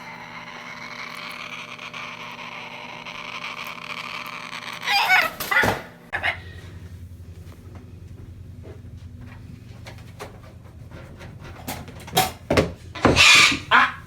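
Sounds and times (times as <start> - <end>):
harsh animal calls: 0.0 - 6.6, 13.0 - 14.0.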